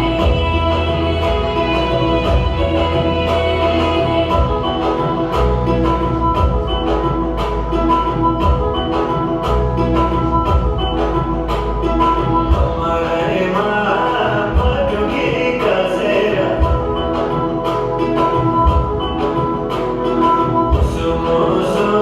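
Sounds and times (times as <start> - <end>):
person singing: 0.0 - 5.8, 12.4 - 17.9, 20.7 - 22.0
song with drum beat: 0.0 - 22.0.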